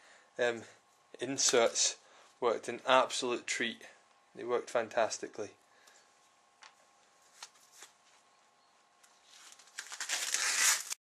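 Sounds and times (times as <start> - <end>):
faint steady hum: 0.0 - 10.9
rustling and scraping: 7.1 - 8.3, 9.1 - 11.0.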